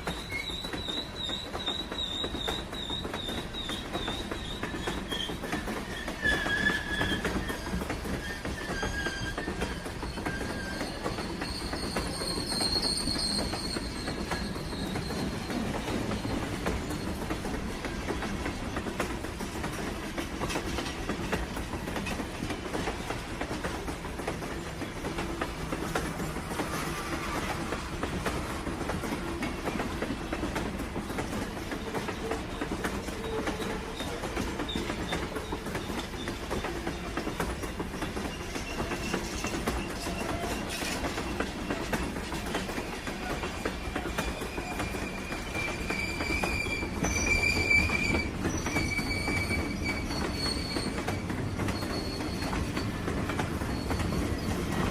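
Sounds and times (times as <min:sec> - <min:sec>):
high wheel squeal: 0:00.0 - 0:18.0, 0:31.9 - 0:37.0, 0:37.6 - 0:42.6, 0:43.2 - 0:54.9
train rumbling on rails: 0:00.0 - 0:54.9
wheels clacking over rail joints: 0:00.0 - 0:54.9.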